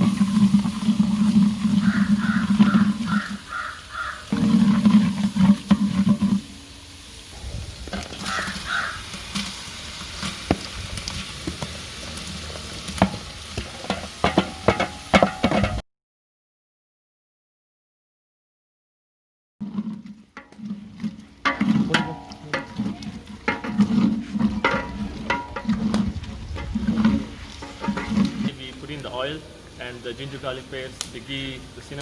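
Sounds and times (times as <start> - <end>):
ladle stirring food in a pot: 0.0 - 15.8, 19.6 - 29.8
crows cawing: 1.7 - 4.4, 8.2 - 9.3.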